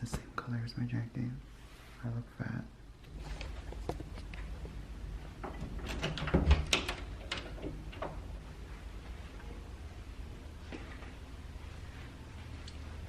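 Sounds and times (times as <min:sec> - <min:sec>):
household objects clicking and knocking: 0:05.4 - 0:08.3.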